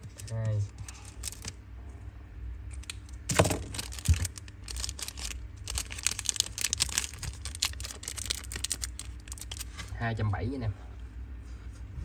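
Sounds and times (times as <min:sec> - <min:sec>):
small clicks and crinkling: 0:00.0 - 0:01.6, 0:02.7 - 0:10.0.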